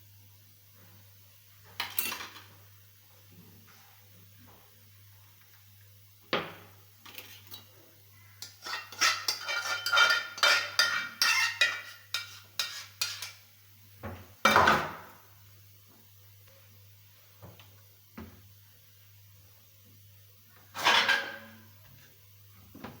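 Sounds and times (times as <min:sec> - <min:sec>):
dishes and cutlery clinking: 0:08.4 - 0:13.4, 0:20.8 - 0:21.6.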